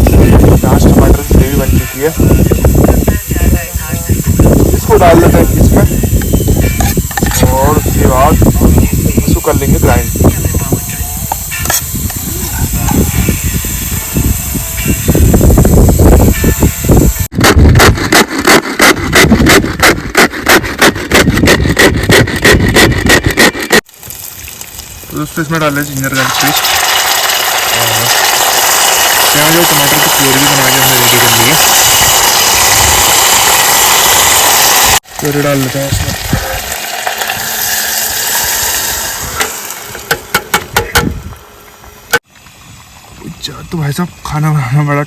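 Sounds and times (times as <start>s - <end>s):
puree sizzling in hot oil: 0.0s - 17.3s, 23.9s - 40.1s
hand grinding strokes: 0.0s - 41.0s.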